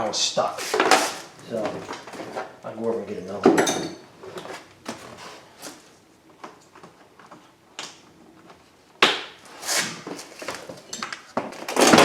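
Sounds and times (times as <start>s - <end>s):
rummaging through small hard parts: 10.2s - 12.0s.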